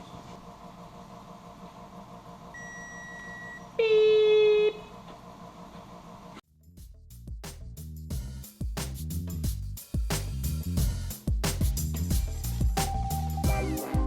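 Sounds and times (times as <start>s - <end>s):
loud low buzzy tone: 12.1s - 14.0s.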